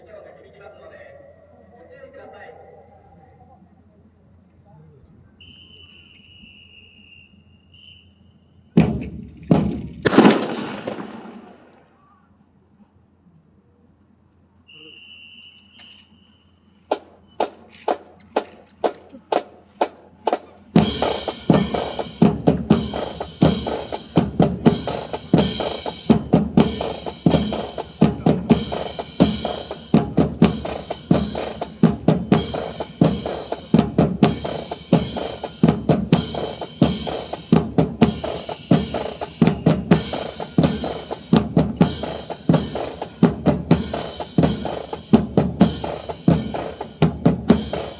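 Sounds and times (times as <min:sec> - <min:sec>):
snare and bass drum cadence: 0:08.8 - 0:11.9, 0:16.9 - 0:47.9.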